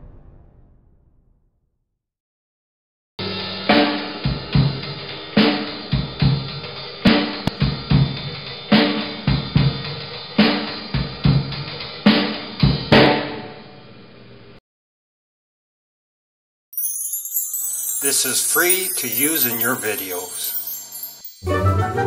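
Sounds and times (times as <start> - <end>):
drum kit beat: 3.7 - 13.2.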